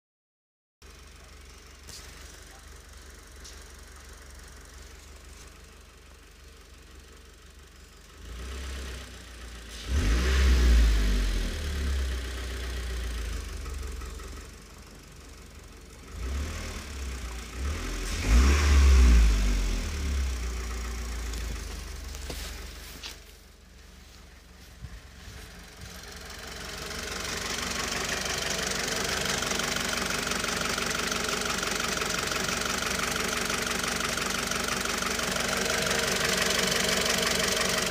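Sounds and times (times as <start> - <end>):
engine running with knock: 20.8 - 23.4, 24.0 - 30.4.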